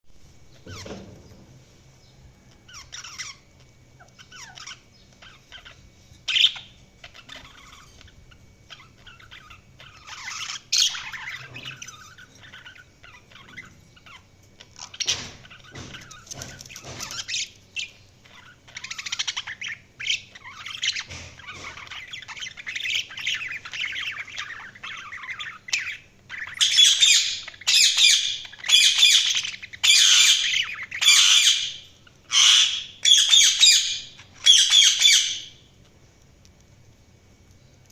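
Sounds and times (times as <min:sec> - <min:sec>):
budgerigars chirping: 0:02.7 - 0:03.4, 0:04.0 - 0:35.6
budgerigar squawks: 0:26.6 - 0:35.5.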